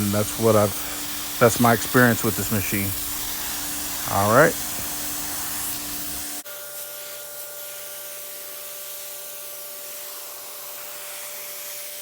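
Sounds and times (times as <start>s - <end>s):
pressure washer motor whine: 0.0s - 7.2s
water spray hissing: 0.0s - 12.0s.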